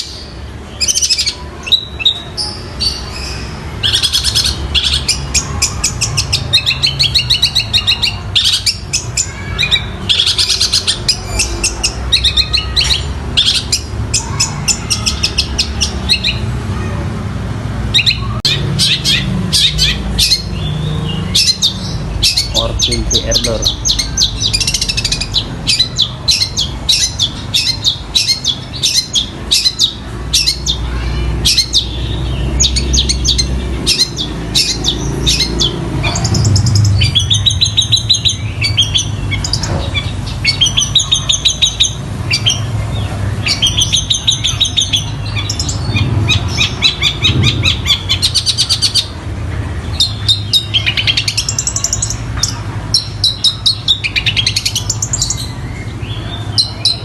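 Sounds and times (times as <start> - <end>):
bird singing chirps and trills: 0.0 - 57.0.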